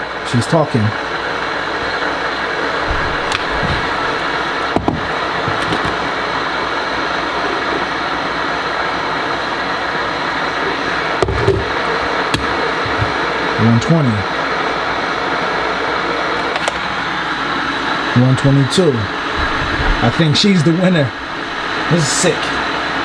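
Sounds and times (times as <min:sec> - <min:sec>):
light clicks and knocks: 0:02.9 - 0:06.0.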